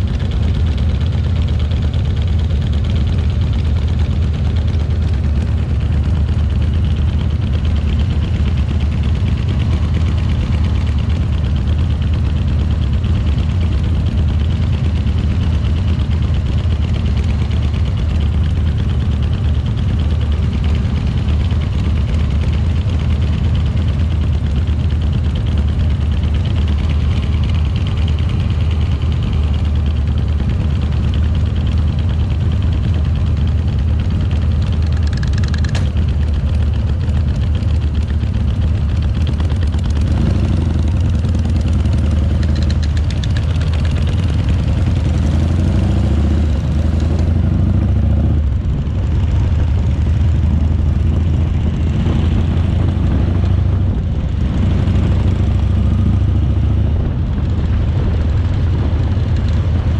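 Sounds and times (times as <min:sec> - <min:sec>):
motorcycle engine rumbling: 0:00.0 - 0:59.9.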